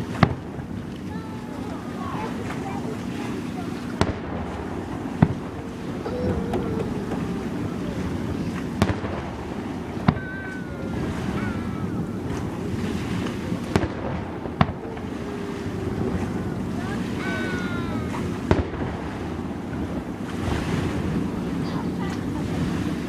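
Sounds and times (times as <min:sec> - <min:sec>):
fireworks bangs: 0:00.0 - 0:00.8, 0:02.6 - 0:23.0
low background rumble: 0:00.0 - 0:23.0
whistling fireworks: 0:04.0 - 0:21.7.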